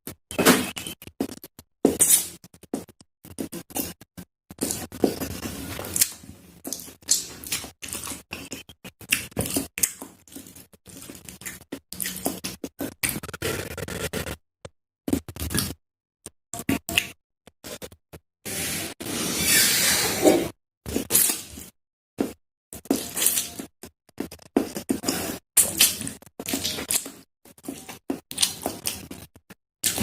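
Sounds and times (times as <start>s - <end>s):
noodles slurped and chewed: 4.6s - 13.2s.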